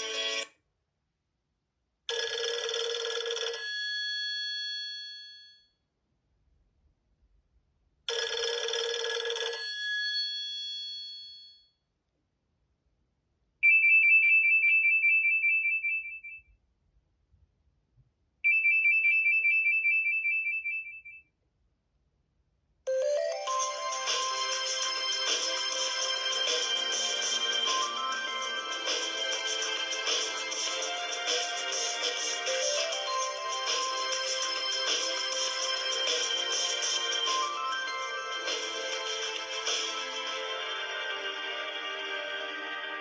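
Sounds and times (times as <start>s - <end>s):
bright electronic chime: 22.9s - 43.0s.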